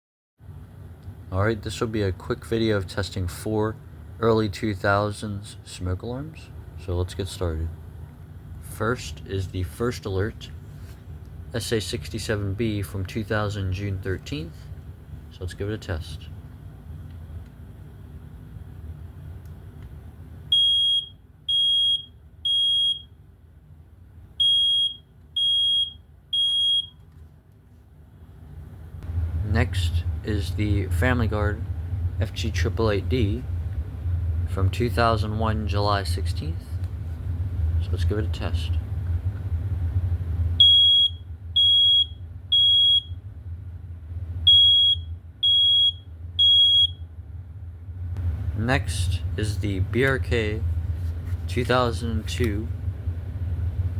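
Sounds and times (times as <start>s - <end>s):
smoke alarm beeping: 20.5s - 23.2s, 24.4s - 27.0s, 40.6s - 43.2s, 44.5s - 47.1s.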